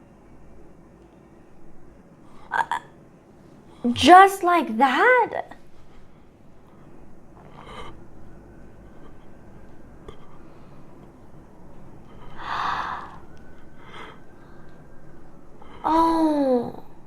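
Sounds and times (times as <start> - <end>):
person breathing: 12.0 - 16.8
breathy gasp: 12.3 - 13.2.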